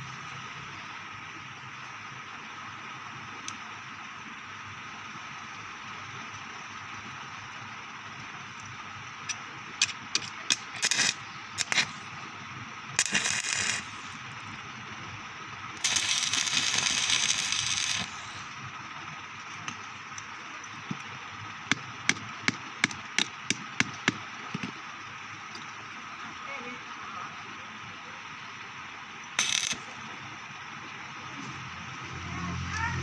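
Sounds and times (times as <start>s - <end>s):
steady hiss: 0.0s - 32.0s
arc welding crackle: 3.3s - 25.7s, 29.2s - 30.3s.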